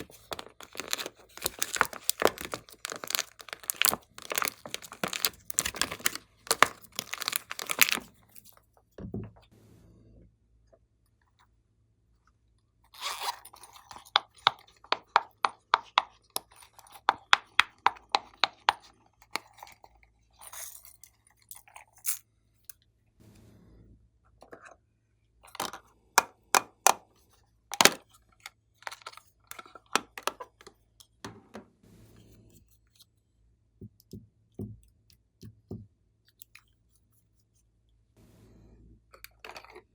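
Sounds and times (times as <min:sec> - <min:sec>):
sticky slime pops and crackles: 0:00.0 - 0:08.1.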